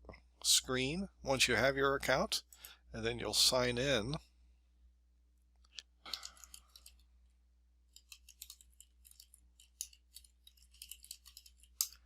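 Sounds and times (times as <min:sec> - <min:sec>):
typing on computer keyboard: 0:07.9 - 0:12.0.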